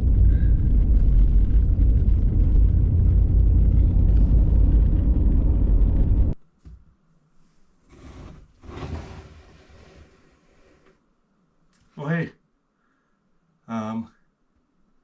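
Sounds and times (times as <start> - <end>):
car driving rumble: 0.0 - 6.4.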